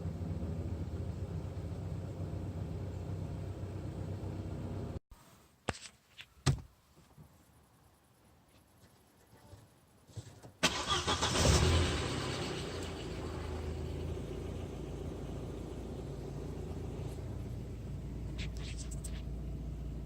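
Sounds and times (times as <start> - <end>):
car engine starting and idling: 10.6 - 20.0.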